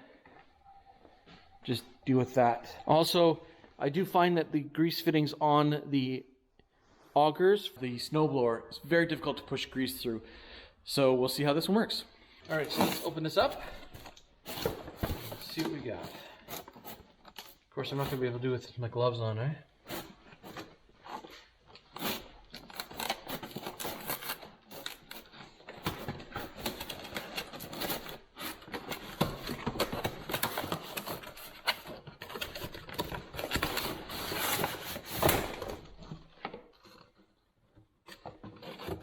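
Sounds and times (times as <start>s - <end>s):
packaging rustling: 19.8s - 37.1s.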